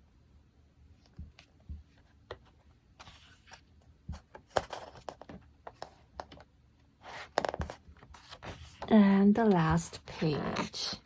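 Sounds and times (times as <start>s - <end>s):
paper pages rustling: 3.0s - 6.4s, 7.1s - 11.0s.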